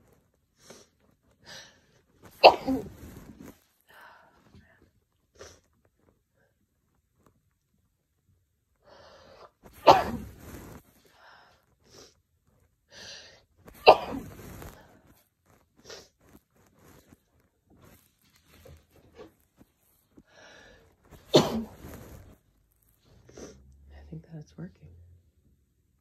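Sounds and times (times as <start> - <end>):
person sneezing loudly: 2.3 - 3.0, 9.7 - 10.4, 13.8 - 14.3, 21.2 - 22.0
short sniffs: 15.8 - 16.2.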